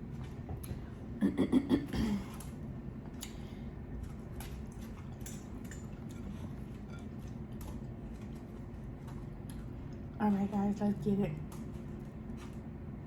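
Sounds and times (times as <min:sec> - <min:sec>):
low background hum: 0:00.0 - 0:13.0
dishes and utensils clinking: 0:04.8 - 0:07.8.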